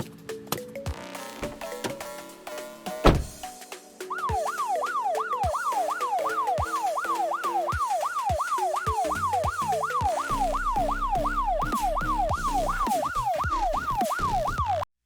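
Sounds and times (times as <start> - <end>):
background music with steady beat: 0.0 - 14.8
siren yelp: 4.0 - 14.8.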